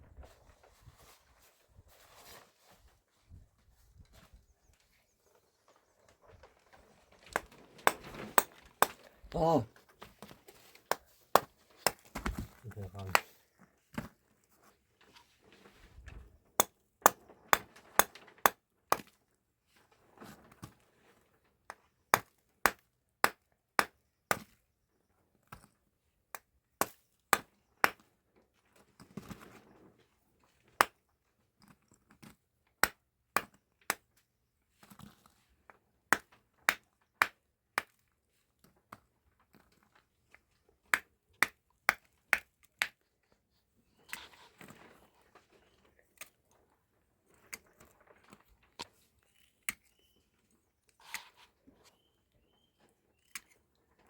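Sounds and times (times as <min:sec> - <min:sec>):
soft rustling: 0:00.0 - 0:09.3
sharp cracks and snaps: 0:06.5 - 0:14.2, 0:16.5 - 0:19.2.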